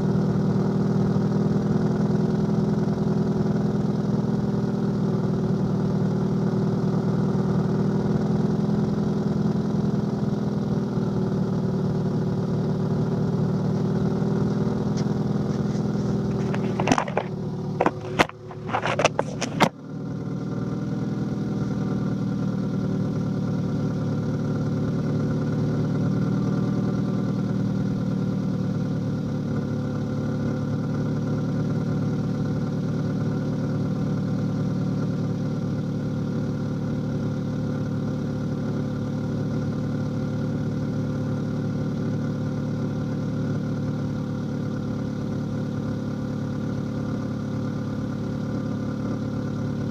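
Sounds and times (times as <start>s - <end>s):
car engine idling: 0.1s - 49.9s
sharp clicks and knocks: 14.9s - 19.8s.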